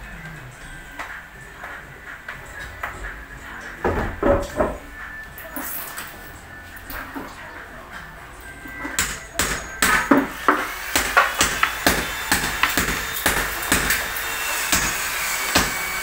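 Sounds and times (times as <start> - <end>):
hammer striking wood: 3.8 - 4.9, 8.9 - 16.0.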